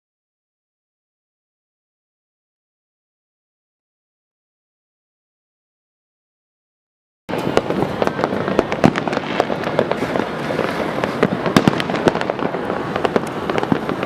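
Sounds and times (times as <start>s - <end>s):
fireworks crackling and banging: 7.3s - 14.0s.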